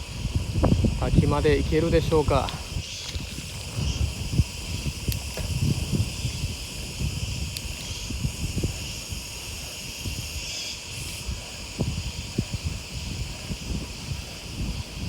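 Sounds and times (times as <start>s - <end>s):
high-pitched insect chorus: 0.0s - 15.0s
wind buffeting microphone: 0.0s - 15.0s.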